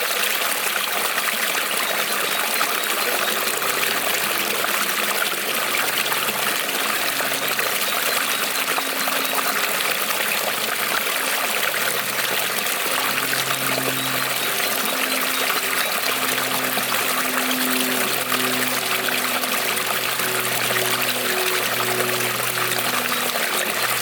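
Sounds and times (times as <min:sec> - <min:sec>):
creek water rippling: 0:00.0 - 0:24.0
low hollow tones: 0:02.9 - 0:24.0.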